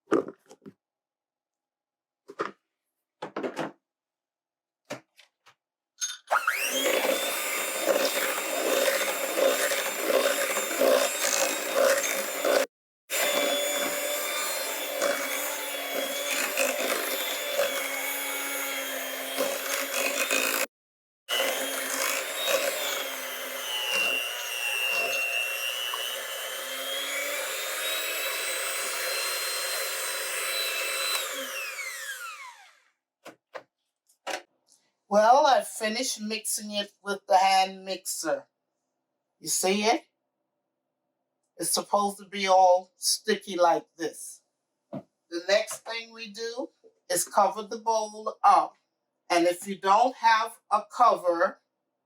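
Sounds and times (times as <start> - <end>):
electric hand mixer whining: 6.3 - 20.7, 21.3 - 32.9.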